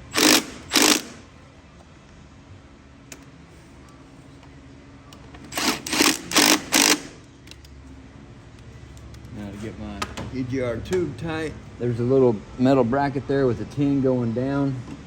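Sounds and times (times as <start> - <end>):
ratchet wrench clicking: 0.1 - 1.2, 5.5 - 7.6.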